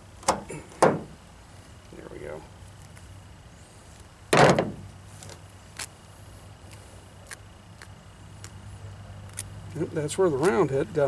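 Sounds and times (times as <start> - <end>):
loud thump on hard surface: 4.4 - 4.9.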